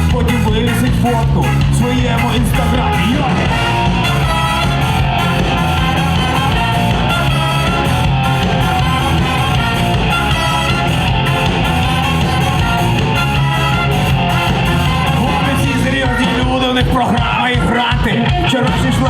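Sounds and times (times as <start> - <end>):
drum kit: 0.0 - 19.0
electric guitar: 0.0 - 19.0.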